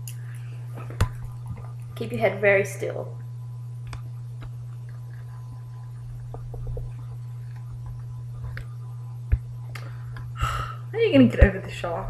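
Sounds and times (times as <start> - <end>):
low electrical hum: 0.0 - 12.0
faint clicks and taps: 3.8 - 10.3.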